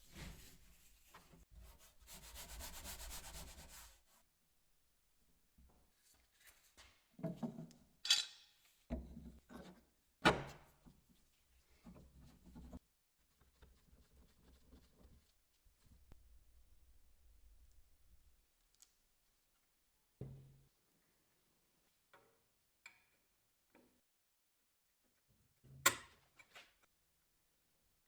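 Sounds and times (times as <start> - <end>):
hand sanding wood: 1.8 - 4.0.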